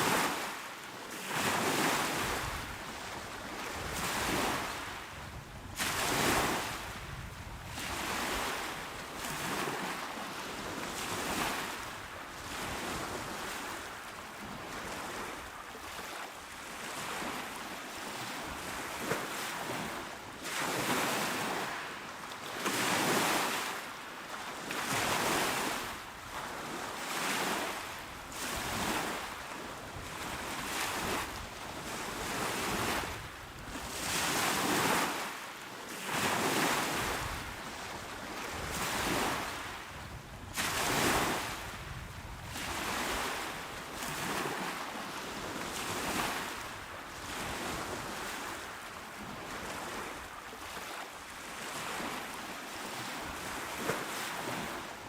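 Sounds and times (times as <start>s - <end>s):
ocean waves washing ashore: 0.0s - 55.0s.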